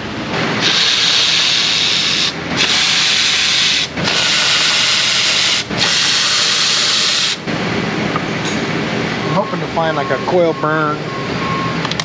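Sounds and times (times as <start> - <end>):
air blow gun hissing: 0.6 - 7.5.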